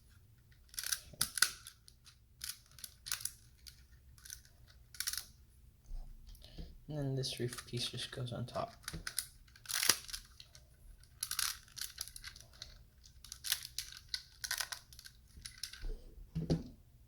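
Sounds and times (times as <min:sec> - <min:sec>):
plastic pieces clicking and rattling: 0:00.5 - 0:05.3, 0:08.7 - 0:15.8.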